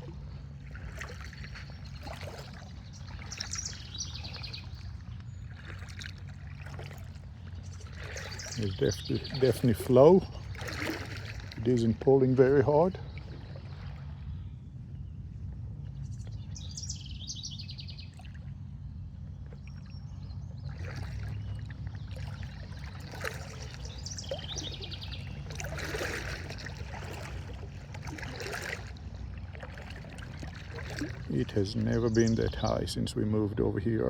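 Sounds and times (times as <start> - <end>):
water splashing around wading legs: 0.0 - 14.3, 19.4 - 32.2
birds chirping: 0.0 - 34.0
steady low rumble: 0.0 - 34.0.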